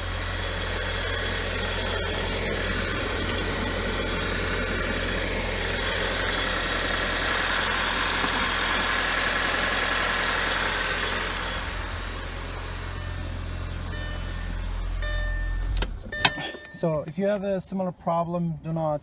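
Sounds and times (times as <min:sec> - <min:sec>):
car engine idling: 0:00.0 - 0:17.2.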